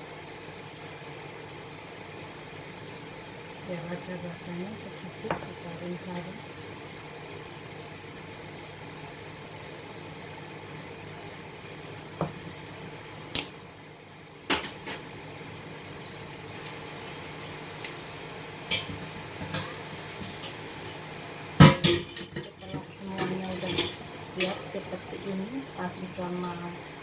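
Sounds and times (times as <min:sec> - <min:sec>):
low background hum: 0:00.0 - 0:27.0
kitchenware clinking: 0:18.7 - 0:21.0, 0:21.6 - 0:25.3.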